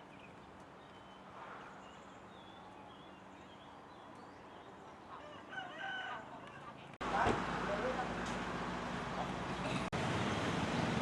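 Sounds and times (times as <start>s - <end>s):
small birds chirping: 0.0s - 5.5s.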